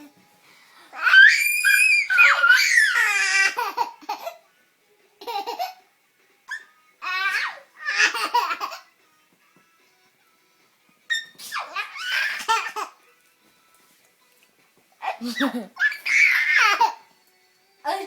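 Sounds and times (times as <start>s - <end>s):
baby laughing: 1.0s - 4.4s, 5.2s - 5.8s, 6.5s - 8.9s, 11.1s - 13.0s, 15.0s - 17.1s.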